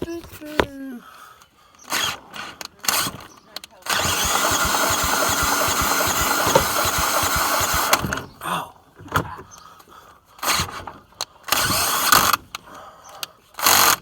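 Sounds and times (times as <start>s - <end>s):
loud bursts of mechanical noise: 1.9s - 3.3s, 3.9s - 8.4s, 10.4s - 12.4s, 13.6s - 14.0s
lawn mower engine running: 1.9s - 8.4s, 10.4s - 12.5s.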